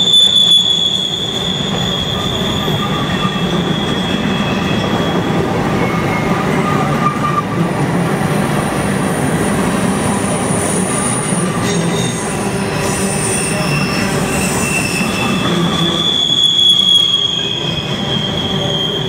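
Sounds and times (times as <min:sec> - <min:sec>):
train wheels squealing: 0:00.0 - 0:07.8, 0:09.1 - 0:19.0.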